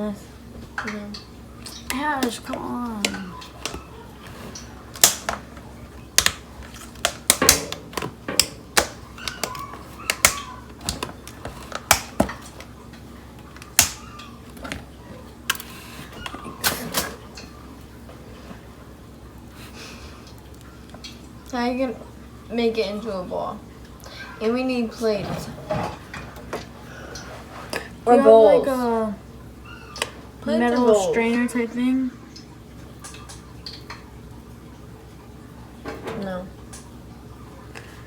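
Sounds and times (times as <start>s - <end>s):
kitchen items clicking and knocking: 1.7s - 12.8s, 13.5s - 14.9s.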